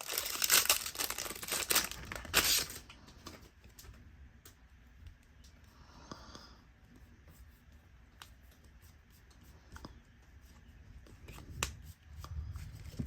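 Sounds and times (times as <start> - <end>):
wrapper rustle: 0.0 - 2.8.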